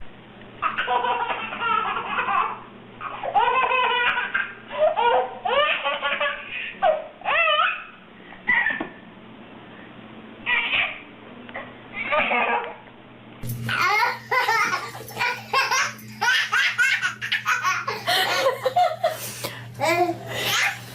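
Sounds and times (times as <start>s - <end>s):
baby laughing: 0.6s - 8.9s, 12.0s - 12.8s, 13.7s - 19.2s, 19.8s - 20.9s.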